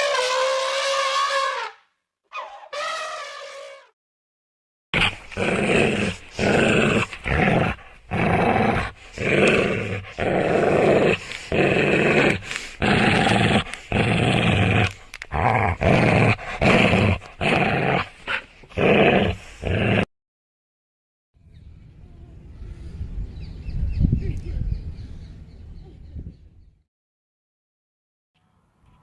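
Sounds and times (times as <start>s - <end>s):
dog growling: 5.0s - 20.1s.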